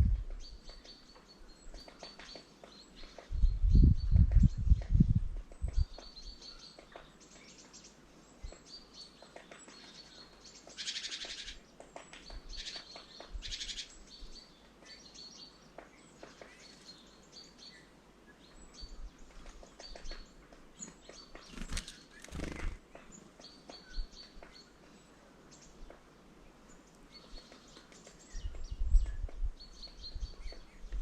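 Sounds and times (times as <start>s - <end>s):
songbirds chirping: 0.0s - 31.0s
harsh buzzy bird chatter: 21.1s - 23.0s.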